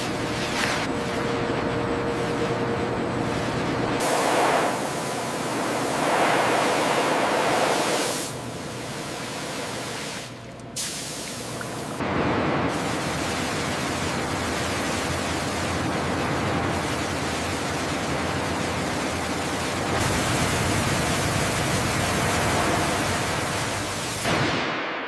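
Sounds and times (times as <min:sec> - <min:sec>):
steady rushing hiss: 0:04.0 - 0:12.0.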